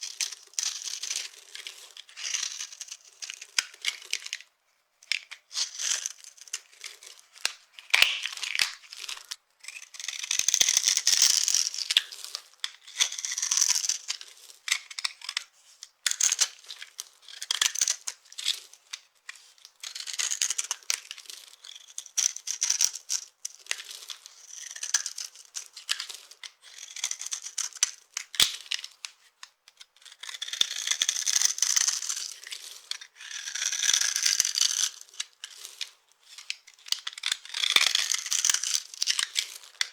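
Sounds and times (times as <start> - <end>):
dry soap crunching and crackling: 0.0 - 39.9.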